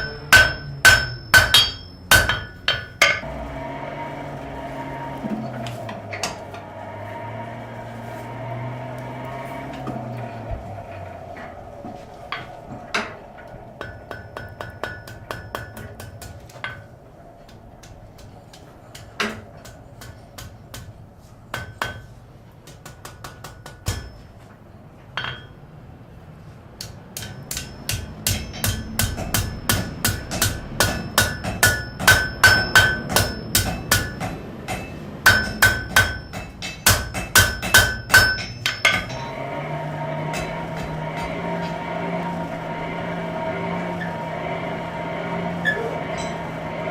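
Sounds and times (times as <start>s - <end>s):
hammer striking metal on anvil: 0.0s - 3.4s, 12.3s - 16.9s, 17.8s - 22.1s, 22.7s - 24.5s, 25.2s - 25.6s, 26.8s - 39.5s, 40.2s - 43.2s, 43.9s - 46.9s
steady machine hum: 0.0s - 22.4s, 27.2s - 46.9s.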